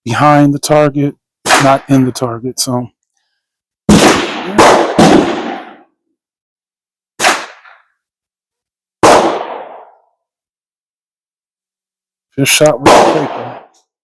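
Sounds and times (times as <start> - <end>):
gunshots: 1.5 - 2.0, 3.9 - 5.9, 7.2 - 7.8, 9.0 - 10.0, 12.6 - 13.8.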